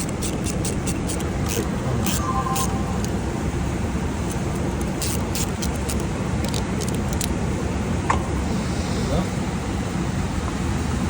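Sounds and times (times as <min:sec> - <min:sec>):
low machinery rumble: 0:01.2 - 0:04.8.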